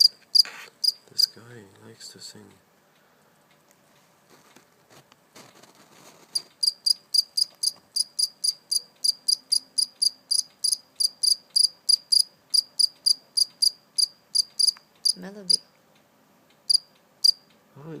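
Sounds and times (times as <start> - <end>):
cricket chirping: 0.0 - 1.3, 6.4 - 15.6, 16.7 - 17.5
faint rustling: 0.1 - 6.6.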